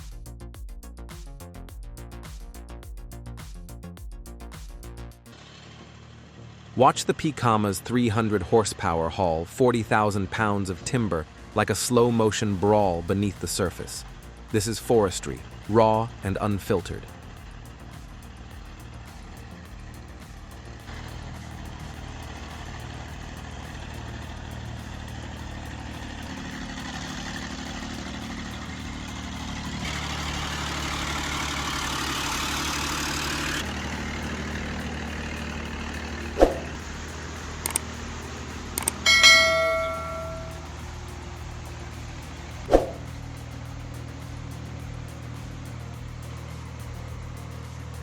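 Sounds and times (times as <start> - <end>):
diesel engine running: 2.8 - 48.0
ringing metallic tone: 38.8 - 41.4.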